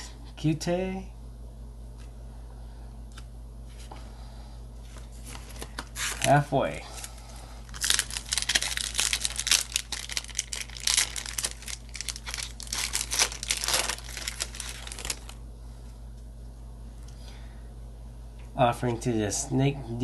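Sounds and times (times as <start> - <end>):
wrapper being torn and crinkled: 7.6 - 15.4.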